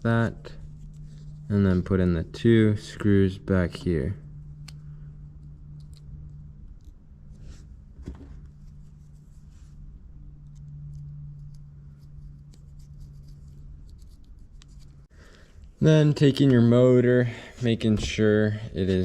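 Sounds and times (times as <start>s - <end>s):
steady low hum: 0.0s - 19.0s
scratching and rubbing of small parts: 0.1s - 1.9s, 4.3s - 16.7s.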